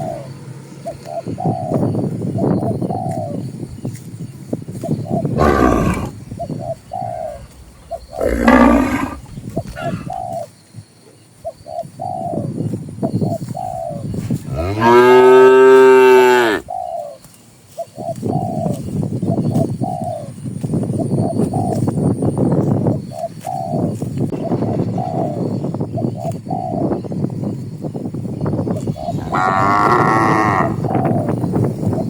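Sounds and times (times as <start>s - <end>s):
doves cooing: 0.0s - 3.5s, 4.8s - 10.6s, 13.2s - 17.2s, 23.1s - 26.9s, 28.8s - 32.0s
cattle mooing: 8.2s - 9.2s, 14.5s - 16.6s, 29.1s - 30.9s.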